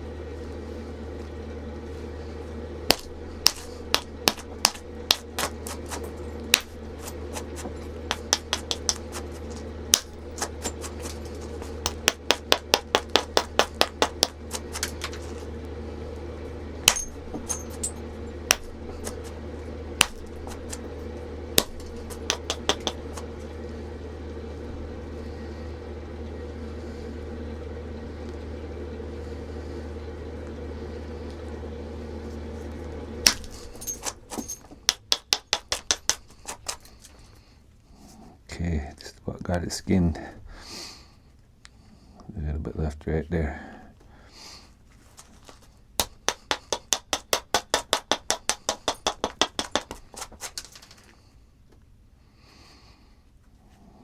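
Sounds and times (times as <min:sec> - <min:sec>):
steady background hum: 0:00.0 - 0:54.0
stone striking stone knocks: 0:02.9 - 0:15.4, 0:16.8 - 0:19.3, 0:20.0 - 0:20.9, 0:21.6 - 0:23.3, 0:33.3 - 0:36.8, 0:46.0 - 0:50.7.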